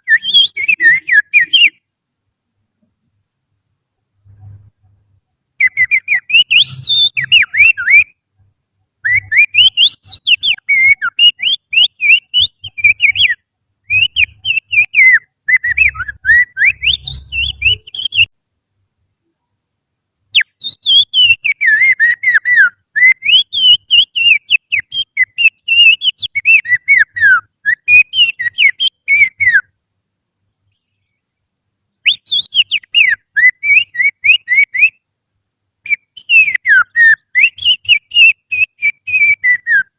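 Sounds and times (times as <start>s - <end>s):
finger whistling birdsong: 0.0s - 1.8s, 5.6s - 8.2s, 9.0s - 18.3s, 20.4s - 29.7s, 32.0s - 35.0s, 35.9s - 39.9s.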